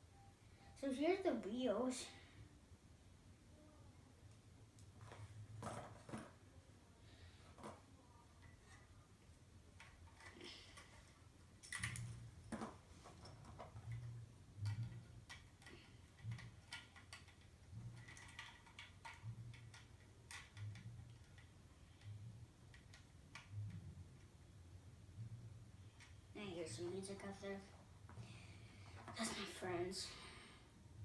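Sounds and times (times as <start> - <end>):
plastic lego pieces clicking: 13.9 - 21.5.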